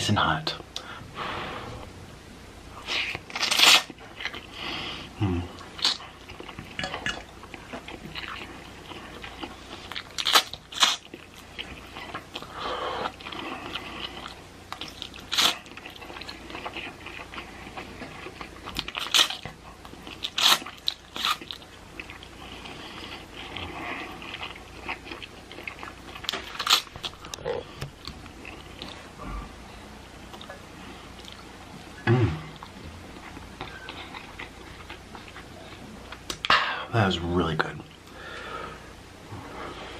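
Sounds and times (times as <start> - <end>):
person chewing noodles: 2.8 - 29.5, 30.2 - 36.5.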